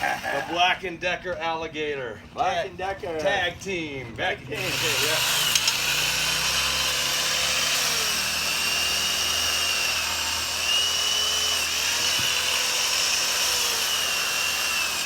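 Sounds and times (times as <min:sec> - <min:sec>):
electric chainsaw cutting branch: 0:04.6 - 0:15.0.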